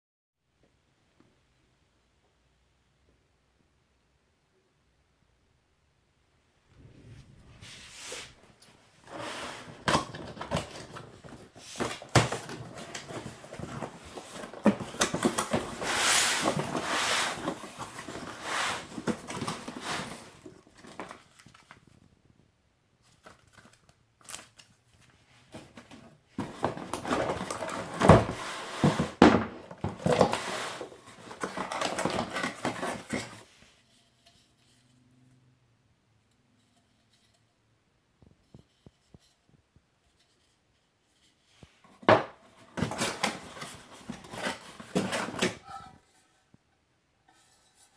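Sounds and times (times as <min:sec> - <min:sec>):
cardboard packaging rustling: 0:07.2 - 0:22.1, 0:23.0 - 0:34.8, 0:41.2 - 0:46.4.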